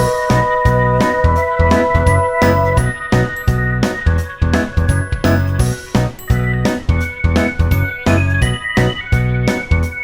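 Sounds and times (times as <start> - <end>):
background music with steady beat: 0.0 - 10.0
deep bass: 0.0 - 10.0
chiming keyboard tones: 1.6 - 4.0.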